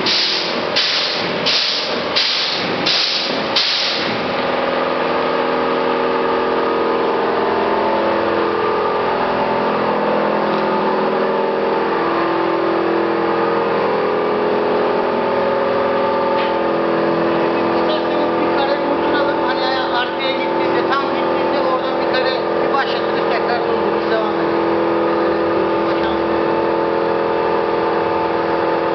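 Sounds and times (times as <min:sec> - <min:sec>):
hissing spray bursts: 0:00.0 - 0:04.3
motor hum: 0:00.0 - 0:28.9.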